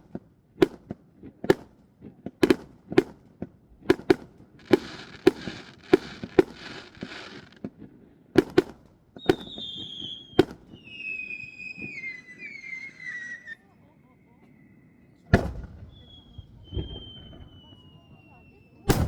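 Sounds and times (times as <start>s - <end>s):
fireworks bangs: 0.1s - 13.7s, 15.2s - 19.0s
fireworks crackling: 3.9s - 13.7s
falling fireworks whistles: 4.1s - 7.6s, 9.2s - 19.0s.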